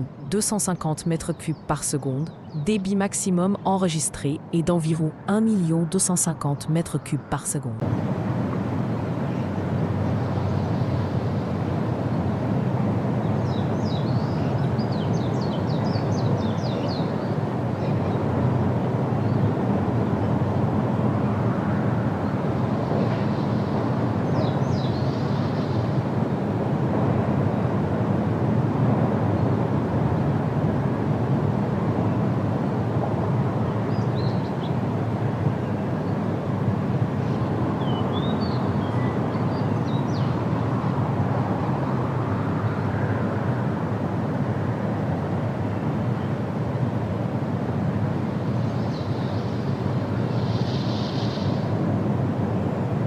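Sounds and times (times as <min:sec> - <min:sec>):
birds chirping: 0:00.0 - 0:07.7, 0:13.2 - 0:18.4, 0:22.2 - 0:26.0, 0:37.2 - 0:40.6.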